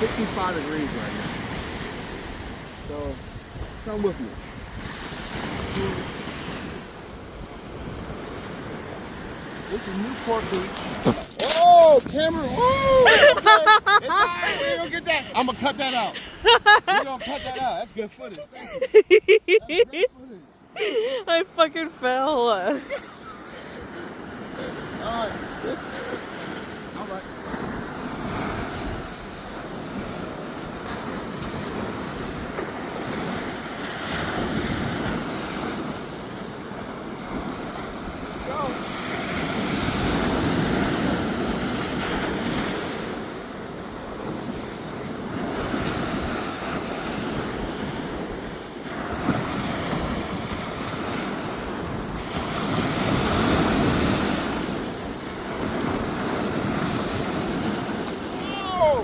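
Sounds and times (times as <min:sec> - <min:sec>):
wind buffeting microphone: 0:00.0 - 0:16.6
surf washing onto beach: 0:00.0 - 0:59.0.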